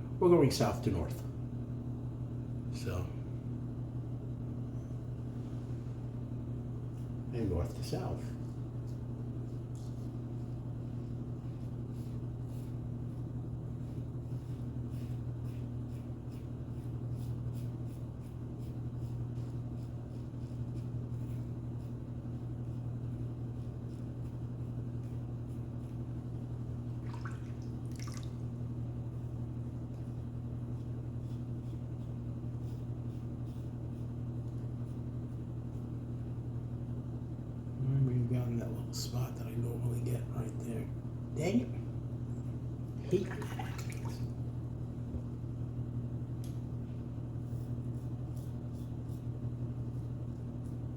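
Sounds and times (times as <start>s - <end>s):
laundry machine humming: 26.7s - 28.8s, 42.6s - 45.4s.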